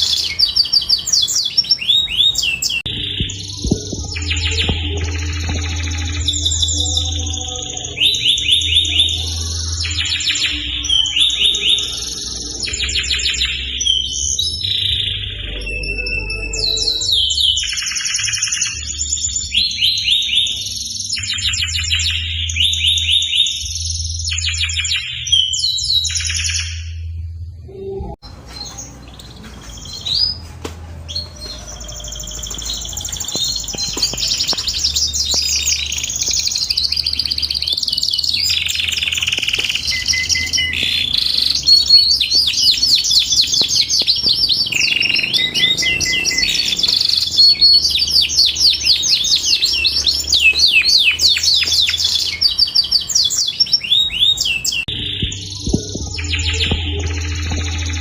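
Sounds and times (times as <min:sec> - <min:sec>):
canary singing trilled phrases: 0:00.0 - 0:27.0, 0:31.1 - 0:58.0.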